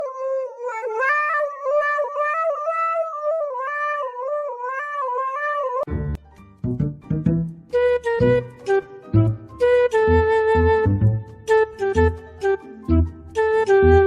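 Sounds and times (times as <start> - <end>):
cat yowling: 0.0 - 5.9.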